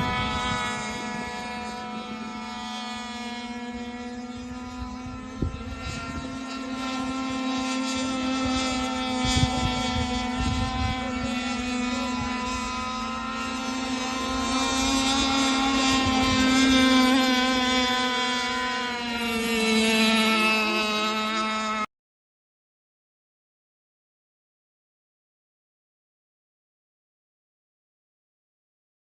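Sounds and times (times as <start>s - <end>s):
model boat motor buzzing: 0.0s - 21.9s.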